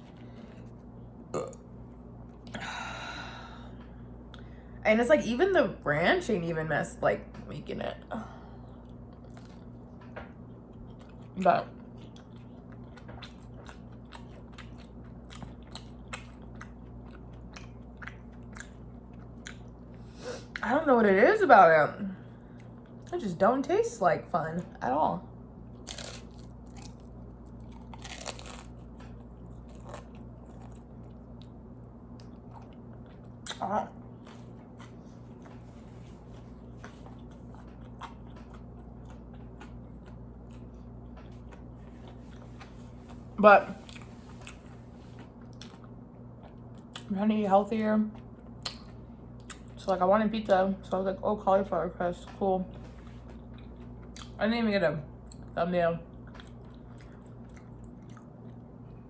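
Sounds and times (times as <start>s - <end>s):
steady low hum: 0.0s - 59.0s
chewing food: 8.6s - 20.6s, 25.8s - 47.1s, 48.1s - 49.9s, 52.2s - 54.4s, 55.2s - 59.0s.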